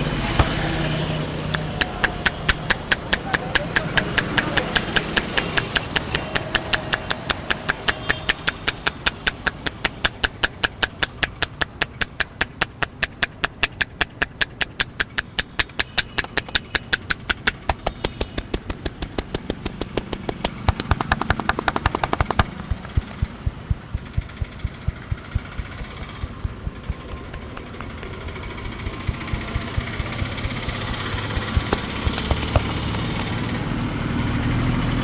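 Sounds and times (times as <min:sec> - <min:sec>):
street noise: 0:00.0 - 0:35.0
hands slapping a head: 0:00.3 - 0:33.6.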